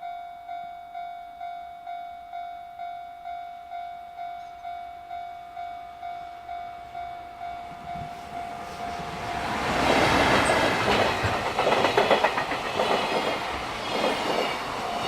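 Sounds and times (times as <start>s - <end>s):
level crossing warning bell: 0.0s - 12.6s, 14.4s - 15.0s
freight train rumble: 6.1s - 15.0s.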